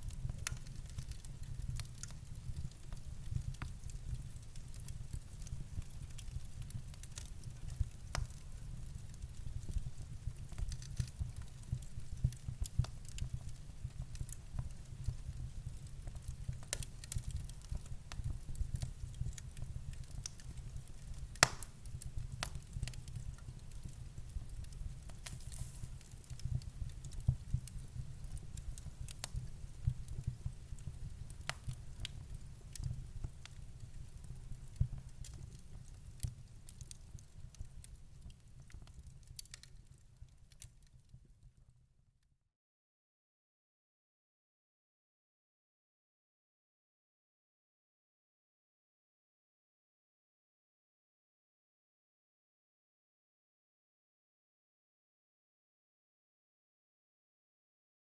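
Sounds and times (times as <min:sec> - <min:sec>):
fire flames rumbling: 0:00.0 - 0:39.8
burning wood crackling and popping: 0:00.0 - 0:41.2.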